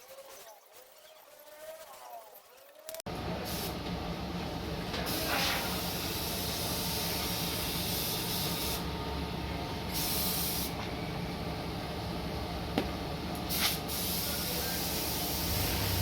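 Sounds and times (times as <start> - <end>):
spray gun hissing: 5.1 - 8.9, 9.9 - 10.7, 13.5 - 16.0.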